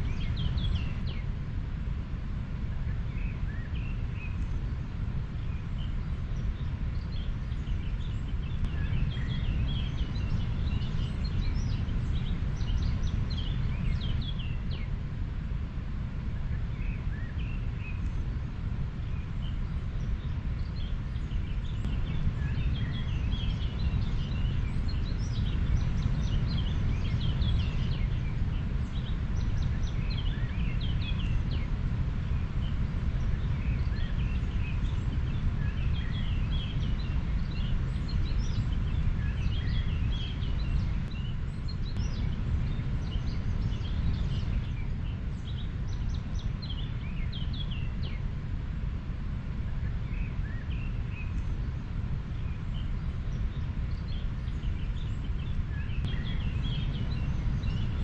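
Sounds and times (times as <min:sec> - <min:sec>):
small birds chirping: 0:00.0 - 0:01.3, 0:02.8 - 0:15.0, 0:16.3 - 0:48.3, 0:49.7 - 0:58.0.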